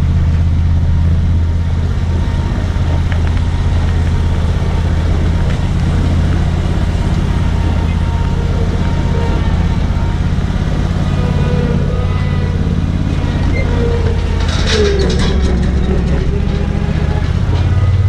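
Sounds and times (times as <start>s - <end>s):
vehicle engine droning: 0.0s - 18.0s
rattling clicks: 13.0s - 18.0s.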